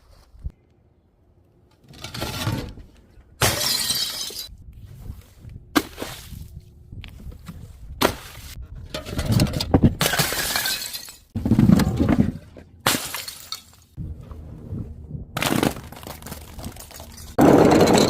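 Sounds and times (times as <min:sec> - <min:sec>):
glass bottles smashing: 0:03.4 - 0:04.5, 0:10.0 - 0:11.4, 0:12.9 - 0:13.8.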